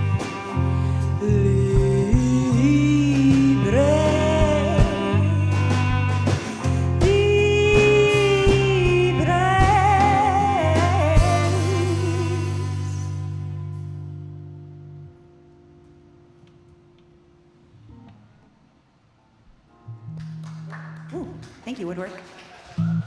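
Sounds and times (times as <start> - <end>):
person singing with vibrato: 0.0 - 13.6
bass line: 0.0 - 16.3
drum hits: 4.4 - 13.0.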